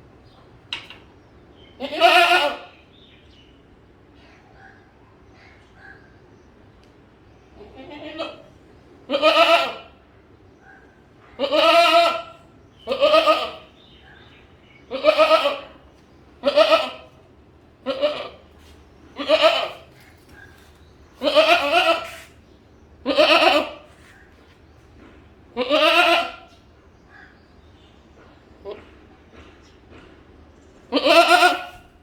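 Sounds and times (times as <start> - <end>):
goat bleating: 1.8 - 2.8, 7.6 - 8.5, 9.1 - 10.0, 11.4 - 13.8, 14.9 - 15.8, 16.4 - 17.2, 17.8 - 20.0, 21.2 - 22.4, 23.0 - 24.0, 25.5 - 26.6, 30.9 - 32.0.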